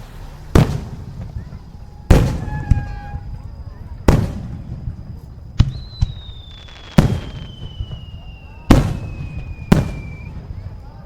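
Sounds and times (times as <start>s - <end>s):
fireworks bangs: 0.0s - 11.0s
firework whistle falling in pitch: 1.3s - 3.5s, 5.6s - 11.0s.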